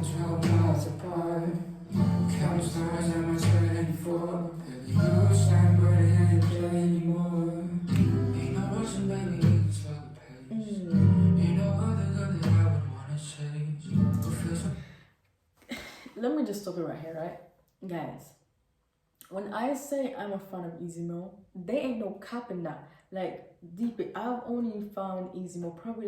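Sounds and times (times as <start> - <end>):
person singing: 0.0 - 14.9
pop song with acoustic guitar: 0.0 - 15.0.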